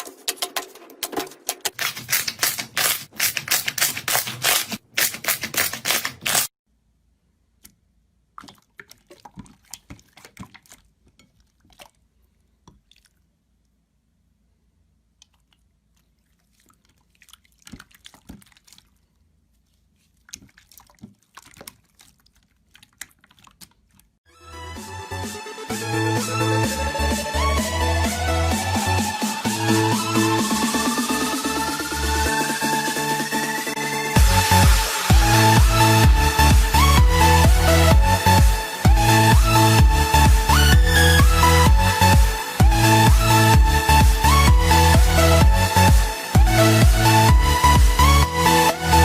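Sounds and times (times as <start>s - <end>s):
slime squishing and clicking: 20.2s - 24.2s.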